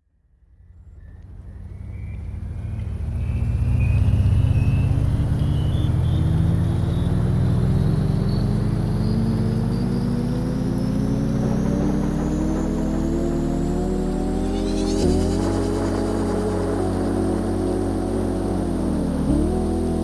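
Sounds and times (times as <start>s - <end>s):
engine-like drone: 0.3s - 20.0s
faint high whine: 0.5s - 19.3s.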